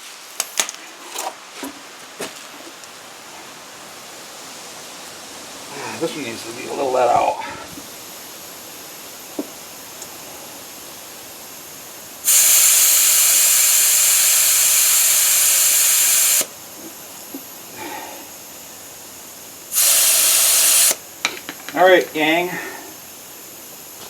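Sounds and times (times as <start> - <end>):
air hissing from tire valve: 3.1 - 24.0.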